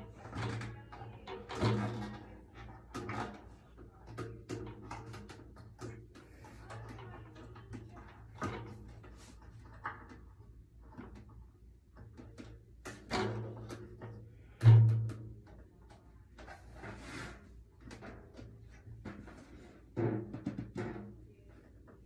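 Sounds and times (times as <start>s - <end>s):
drum hardware clicking and knocking: 12.0s - 15.5s, 17.9s - 21.3s.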